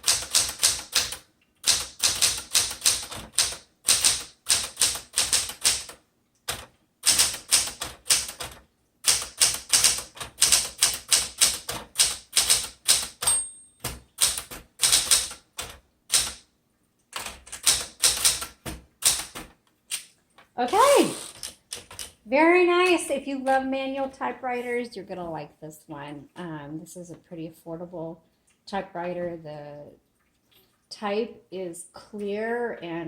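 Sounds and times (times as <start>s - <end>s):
manual typewriter keys striking: 0.0s - 16.5s, 17.1s - 20.0s, 21.3s - 22.2s
typewriter bell ringing: 13.2s - 13.9s.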